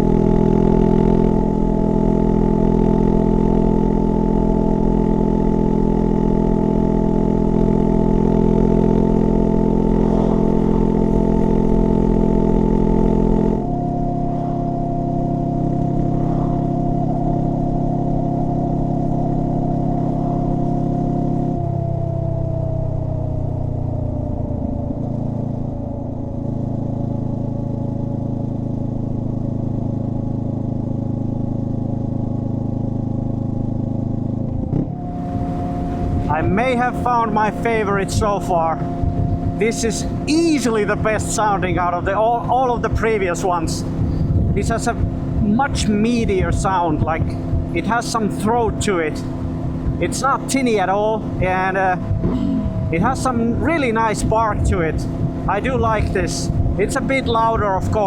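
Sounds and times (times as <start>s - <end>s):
high steady hum: 0.0s - 58.0s
motorcycle engine riding: 0.0s - 58.0s.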